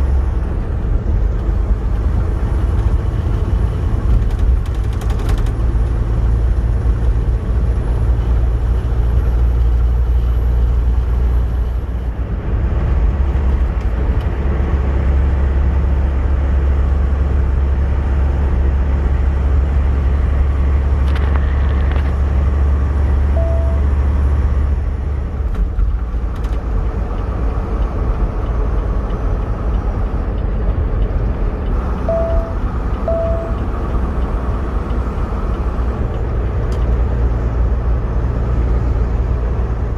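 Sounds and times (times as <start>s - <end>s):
road noise: 0.0s - 39.9s
truck engine rumble: 0.0s - 39.9s
short beeps: 23.3s - 24.0s, 32.1s - 33.7s.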